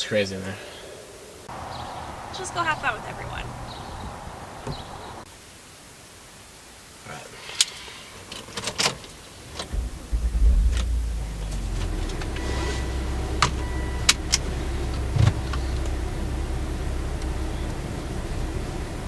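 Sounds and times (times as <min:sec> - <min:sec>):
car engine starting and running: 0:09.6 - 0:19.0.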